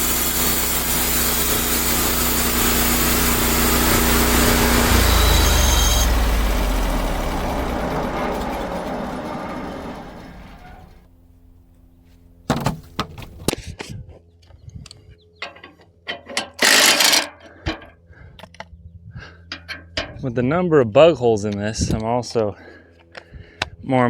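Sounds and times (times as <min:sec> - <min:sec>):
sawmill engine winding down: 0:00.0 - 0:12.0
rush of noise: 0:02.8 - 0:11.1
clanks clicks and knocks: 0:15.4 - 0:18.7, 0:19.5 - 0:20.2.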